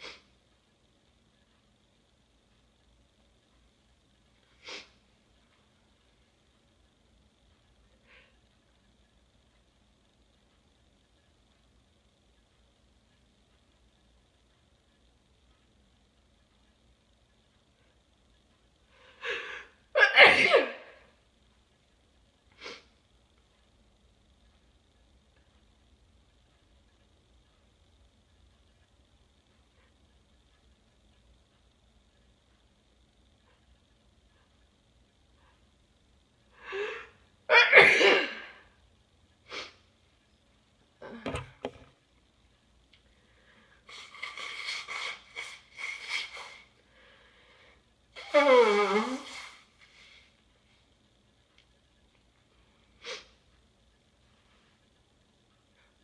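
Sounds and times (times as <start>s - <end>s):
person sniffing: 0.0s - 0.3s, 4.6s - 5.0s, 22.6s - 22.9s, 39.5s - 39.8s, 53.0s - 53.4s
person sneezing loudly: 20.0s - 21.0s, 37.5s - 38.6s.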